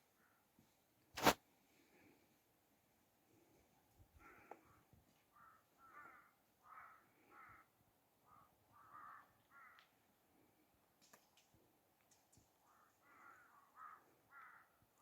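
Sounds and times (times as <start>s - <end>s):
faint bird calls: 4.2s - 10.0s, 12.6s - 15.0s.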